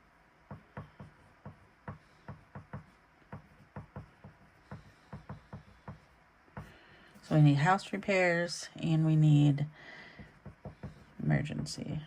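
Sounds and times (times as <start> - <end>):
pen writing on paper: 0.7 - 6.1.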